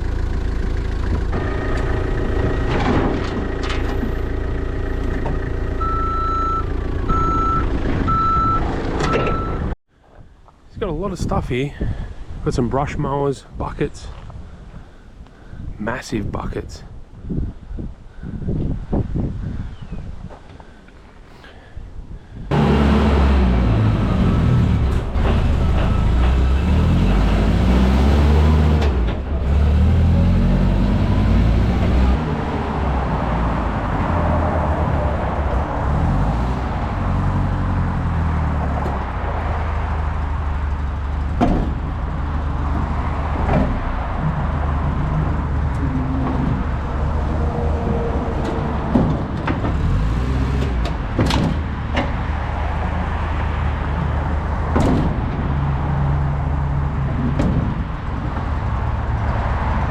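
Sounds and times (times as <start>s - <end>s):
vehicle engine running: 0.0s - 8.2s
sharp knocks or clunks: 41.4s - 41.9s, 50.6s - 52.2s, 54.7s - 55.4s.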